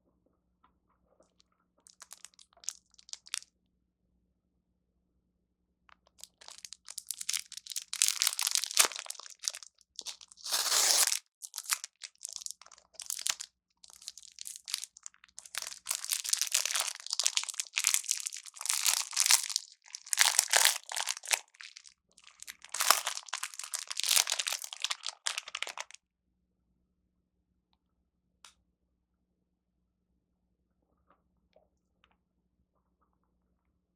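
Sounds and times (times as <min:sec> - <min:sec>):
plastic packaging crinkling and tearing: 0:06.2 - 0:26.0.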